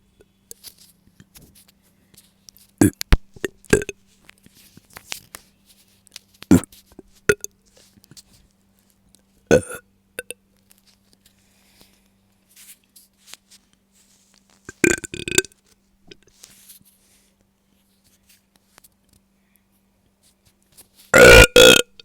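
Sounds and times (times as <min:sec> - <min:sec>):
mouth noises: 0:02.8 - 0:03.9, 0:06.5 - 0:06.7
woman burping: 0:09.5 - 0:09.8, 0:21.2 - 0:22.0.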